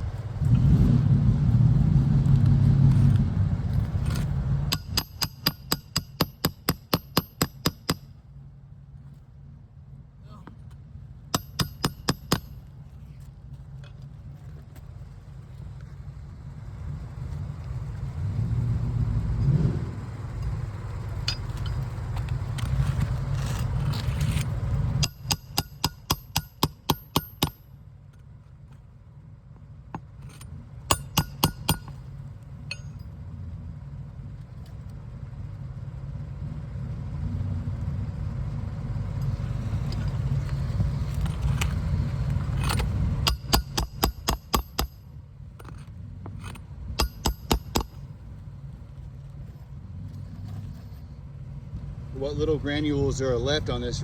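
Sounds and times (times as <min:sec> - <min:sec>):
steady low rumble: 0:00.0 - 0:54.0
hammer driving roofing nails: 0:04.7 - 0:08.0, 0:11.4 - 0:12.6, 0:25.0 - 0:27.7, 0:42.5 - 0:45.0, 0:45.6 - 0:48.1.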